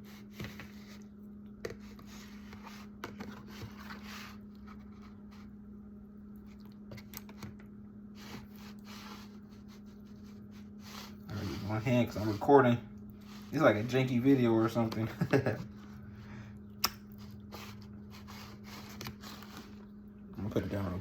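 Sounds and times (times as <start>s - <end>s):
steady low hum: 0.0s - 21.0s
food scraping in a dish: 8.2s - 14.0s.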